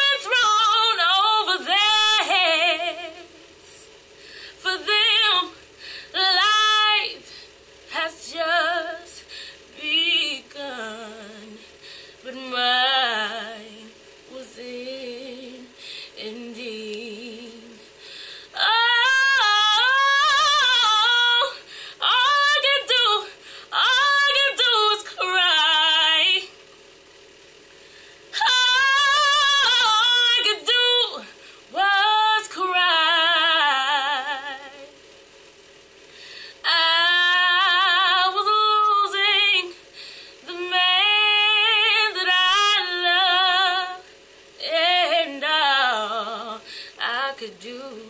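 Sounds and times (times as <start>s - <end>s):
woman singing unaccompanied: 0.0s - 3.9s, 4.6s - 7.3s, 7.9s - 26.6s, 28.3s - 35.0s, 36.6s - 48.0s.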